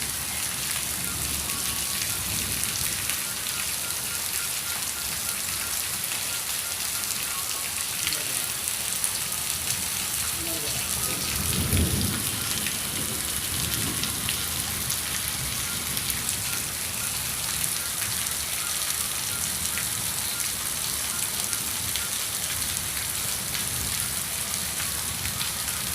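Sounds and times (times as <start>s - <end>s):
heavy rain falling: 0.0s - 25.9s.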